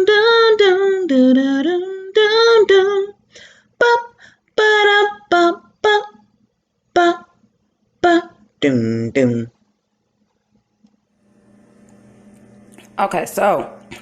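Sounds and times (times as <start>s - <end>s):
woman singing unaccompanied: 0.0s - 6.2s, 6.9s - 7.4s, 8.0s - 8.4s.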